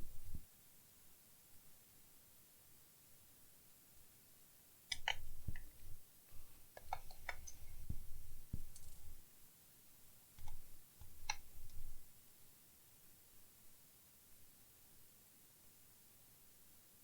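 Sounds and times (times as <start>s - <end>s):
sharp plastic clicks: 4.9s - 5.7s.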